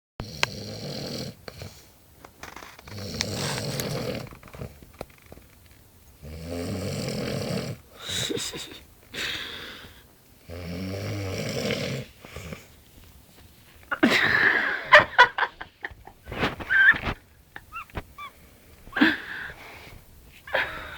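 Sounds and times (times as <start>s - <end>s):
man snoring: 0.2s - 1.7s, 2.8s - 4.3s, 6.2s - 7.8s, 10.5s - 12.6s
quiet breathing: 7.9s - 10.1s, 18.2s - 20.9s.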